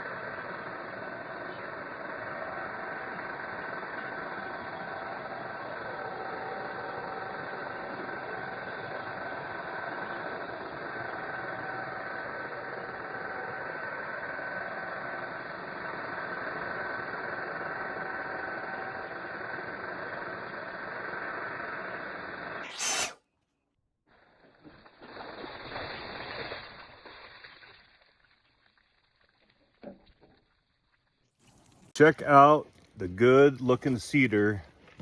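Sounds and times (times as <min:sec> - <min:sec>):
sawmill running: 0:00.0 - 0:23.1
short sharp burst: 0:22.6 - 0:23.2.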